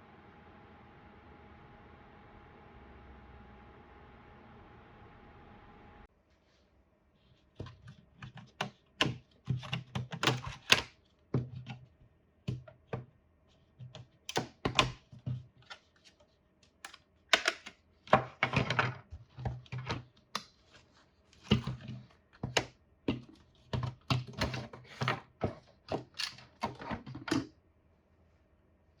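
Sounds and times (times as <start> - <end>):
faint steady hum: 0.0 - 9.4
plastic parts clicking and knocking: 7.6 - 11.9, 16.6 - 20.5.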